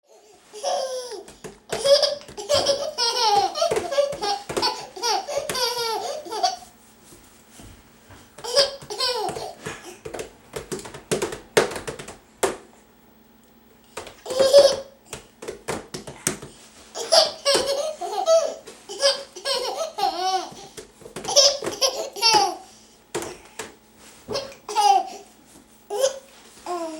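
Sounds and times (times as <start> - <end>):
babies giggling: 0.2 - 6.7, 8.4 - 10.1, 14.2 - 15.0, 17.0 - 22.7, 24.3 - 25.3.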